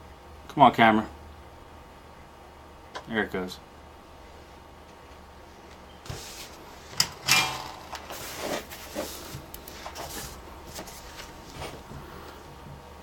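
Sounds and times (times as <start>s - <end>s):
noisy scrape: 7.6s - 9.4s.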